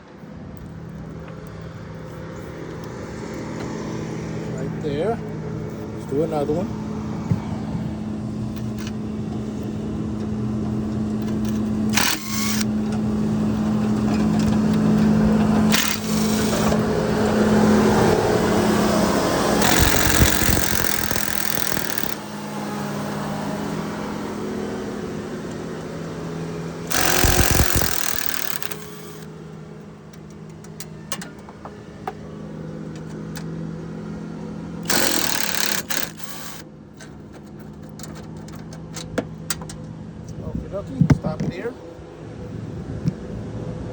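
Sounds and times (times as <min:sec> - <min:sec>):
impact driver hammering: 0:11.3 - 0:12.8, 0:15.6 - 0:16.9, 0:19.5 - 0:22.3, 0:26.8 - 0:29.3, 0:34.8 - 0:36.6
sharp clicks: 0:15.7 - 0:16.8, 0:19.6 - 0:22.2, 0:26.9 - 0:29.3, 0:34.8 - 0:36.6.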